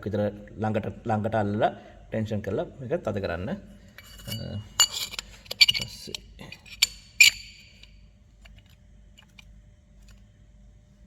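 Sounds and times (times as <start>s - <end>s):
faint steady hum: 0.0s - 11.0s
metal tools clinking: 4.0s - 7.9s.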